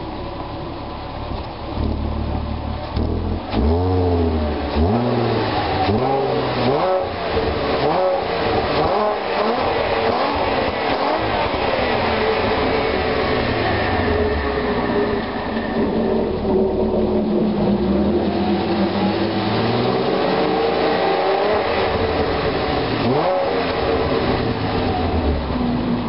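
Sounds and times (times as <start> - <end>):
car engine revving: 1.2 - 26.0.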